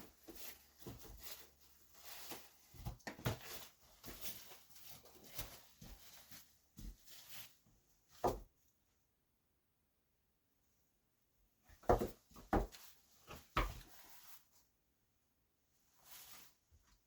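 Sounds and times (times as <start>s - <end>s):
handling knocks scuffs and rustles: 0.0s - 8.5s, 11.7s - 14.6s.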